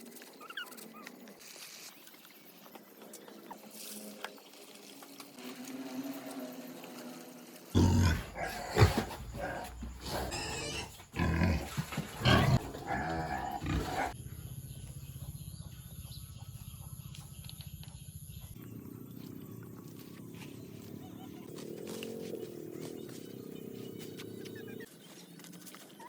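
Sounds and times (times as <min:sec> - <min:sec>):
pigs grunting and squealing: 0:07.7 - 0:14.2.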